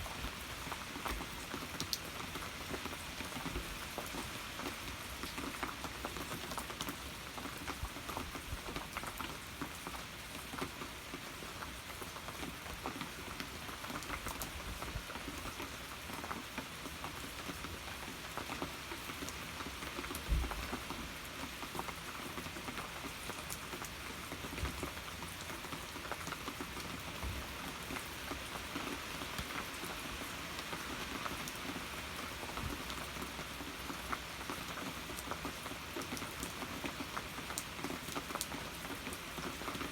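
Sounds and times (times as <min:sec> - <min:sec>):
rain pattering: 0:00.0 - 0:39.9.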